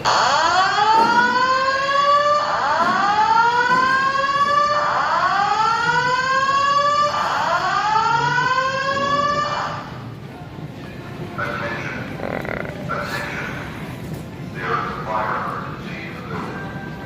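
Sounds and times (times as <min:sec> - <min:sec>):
fire alarm rising whoop tone: 0:00.0 - 0:09.9.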